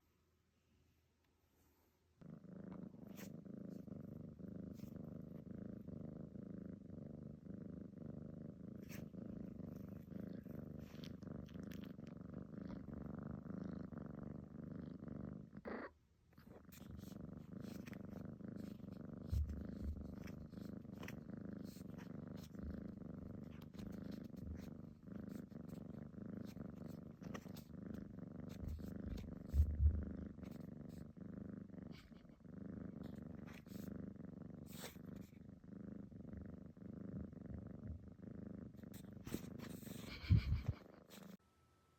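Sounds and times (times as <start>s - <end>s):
cat purring: 1.6s - 41.4s
soft low thumps: 19.2s - 20.4s, 28.7s - 30.2s.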